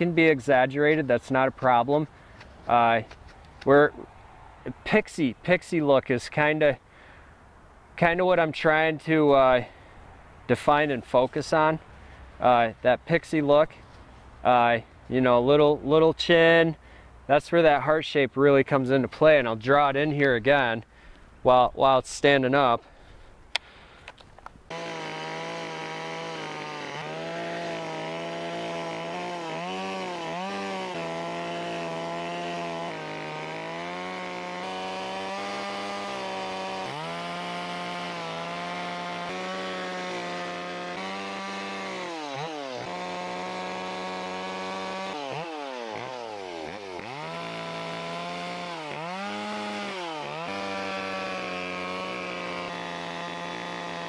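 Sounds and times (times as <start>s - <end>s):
chainsaw cutting into wood: 24.7s - 54.0s.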